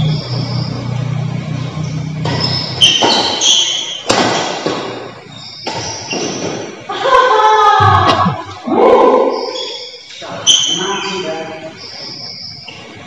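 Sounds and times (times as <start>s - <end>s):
racket hitting shuttlecock: 2.2s - 6.7s
shoes squeaking on court: 2.2s - 6.9s
low hum: 7.8s - 9.0s.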